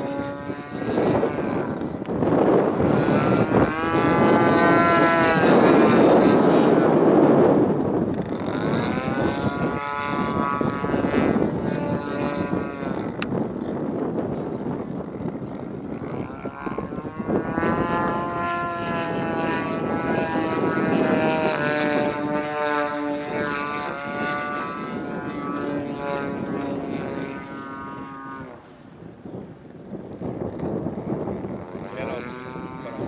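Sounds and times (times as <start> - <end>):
model plane engine and propeller: 0.0 - 33.0.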